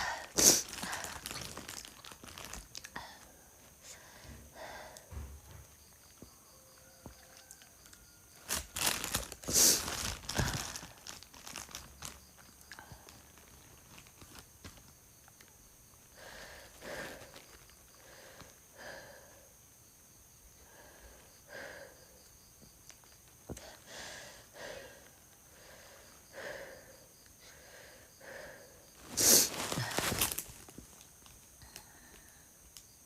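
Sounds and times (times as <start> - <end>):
woman breathing heavily and sniffing: 0.0 - 6.3, 9.1 - 11.8, 16.0 - 22.7, 23.5 - 30.5.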